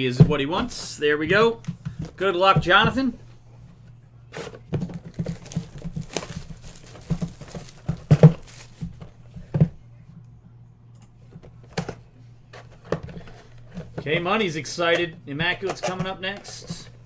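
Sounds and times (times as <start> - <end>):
plastic wrap crinkling: 5.0 - 9.0.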